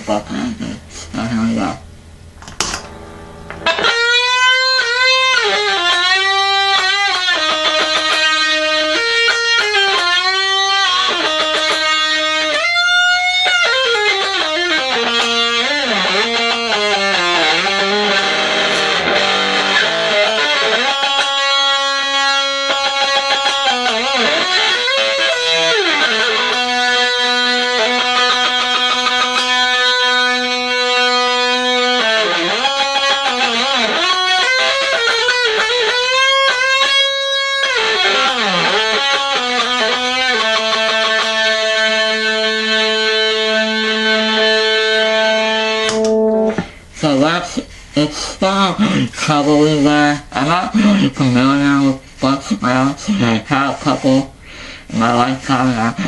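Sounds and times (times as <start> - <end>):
fuzz electric guitar lead: 2.5 - 46.8.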